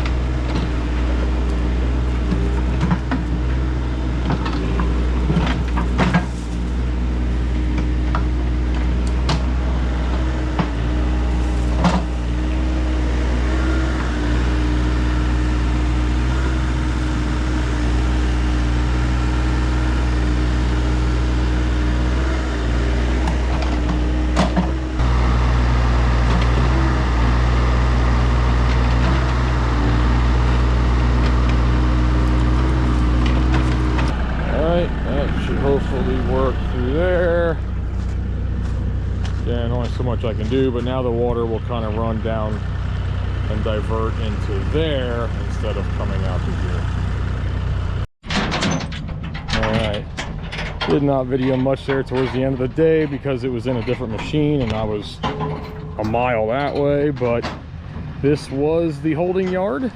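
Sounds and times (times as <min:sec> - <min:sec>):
excavator diesel engine running: 0:00.0 - 0:59.9
bucket clanks and knocks: 0:48.2 - 0:57.7.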